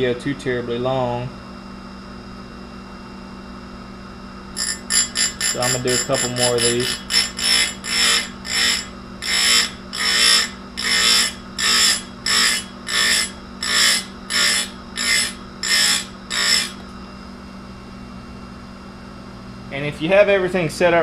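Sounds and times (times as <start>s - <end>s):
grinder motor hum: 4.4s - 17.4s
grinding wheel strokes on chain: 4.6s - 16.8s.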